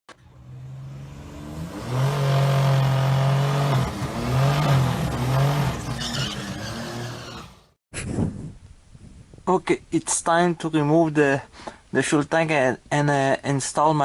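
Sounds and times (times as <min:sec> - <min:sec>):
car engine revving: 0:00.1 - 0:07.8.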